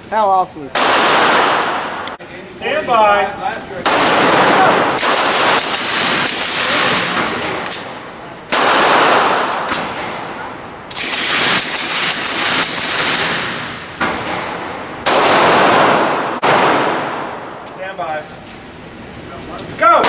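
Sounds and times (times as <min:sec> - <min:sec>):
automatic gunfire: 0:00.7 - 0:02.0, 0:03.8 - 0:07.7, 0:08.5 - 0:10.2, 0:10.9 - 0:17.2.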